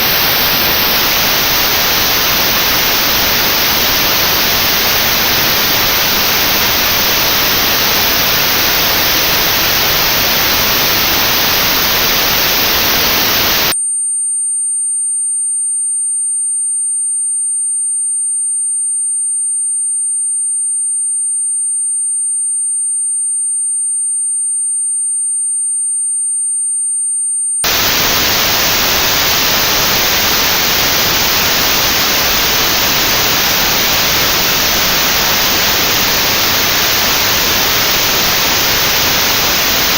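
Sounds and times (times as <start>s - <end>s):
notched white noise hiss: 0.0s - 13.7s, 27.6s - 39.9s
high pure test tone: 12.4s - 32.7s.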